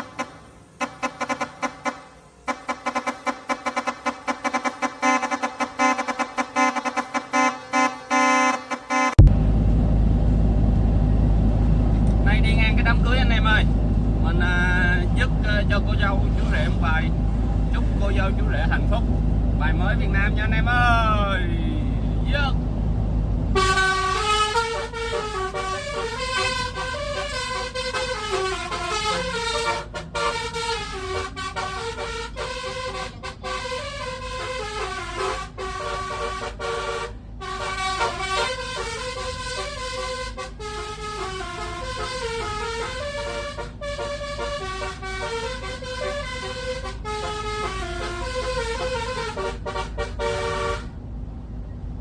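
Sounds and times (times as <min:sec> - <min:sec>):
truck musical horn melody: 0:00.0 - 0:09.3, 0:23.5 - 0:51.0.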